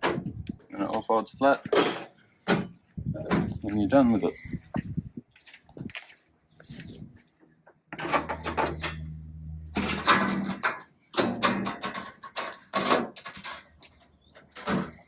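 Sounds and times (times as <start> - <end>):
low hum: 8.0 - 10.5.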